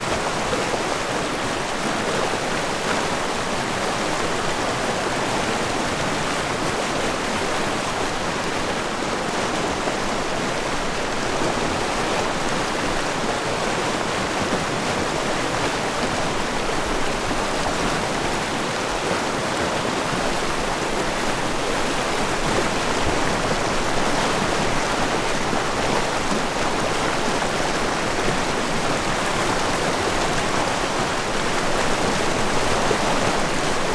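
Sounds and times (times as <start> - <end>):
river rushing below waterfall: 7.5 - 33.9.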